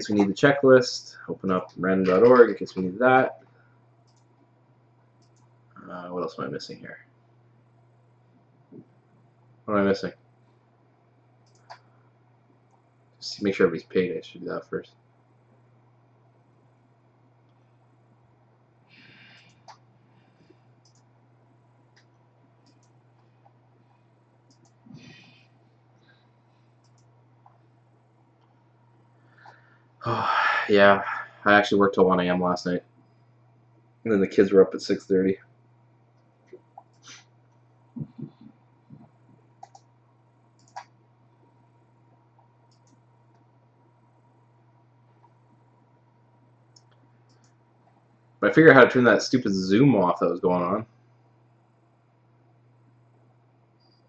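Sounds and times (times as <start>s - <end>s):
steady low hum: 0.0s - 54.0s
computer mouse clicks: 4.0s - 4.3s, 5.2s - 5.6s, 11.4s - 11.9s, 19.2s - 19.8s, 20.8s - 21.1s, 21.9s - 25.2s, 26.5s - 27.7s, 36.2s - 37.3s, 38.9s - 39.9s, 40.5s - 41.0s, 42.1s - 43.5s, 46.7s - 48.0s.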